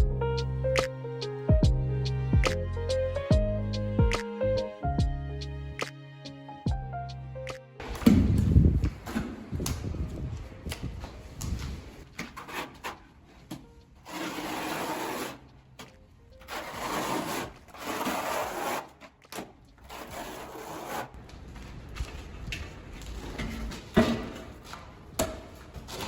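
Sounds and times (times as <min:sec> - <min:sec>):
tool scraping hard surface: 0:12.2 - 0:21.2.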